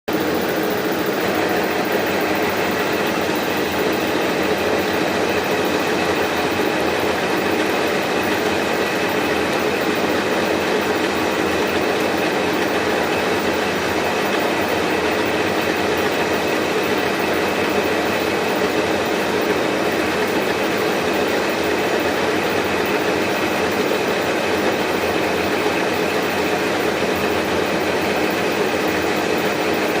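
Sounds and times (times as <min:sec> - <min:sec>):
steady mechanical tones: 0:00.2 - 0:20.1.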